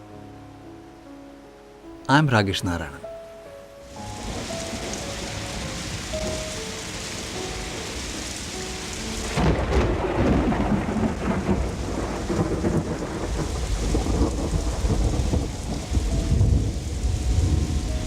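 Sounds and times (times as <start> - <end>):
steady rain: 0.1 - 18.0
thunder rumbling: 9.2 - 18.0.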